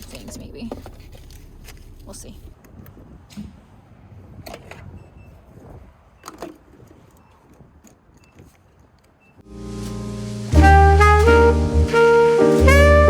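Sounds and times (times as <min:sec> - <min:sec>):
music: 0:09.5 - 0:13.0.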